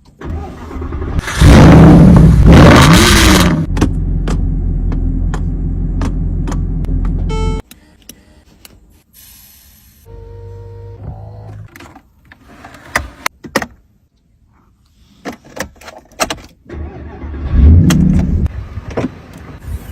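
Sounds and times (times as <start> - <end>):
car engine starting: 0.2 - 7.2, 16.6 - 19.9.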